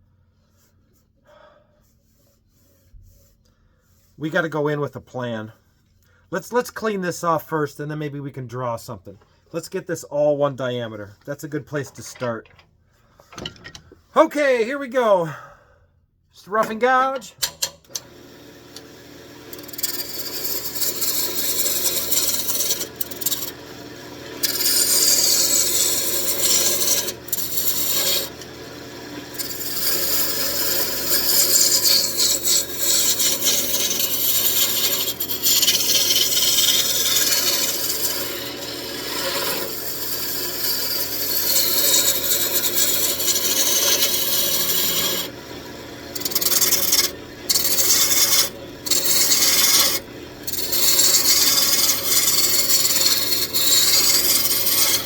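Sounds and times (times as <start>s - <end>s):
lathe gouge rasping on wood: 18.0s - 55.0s.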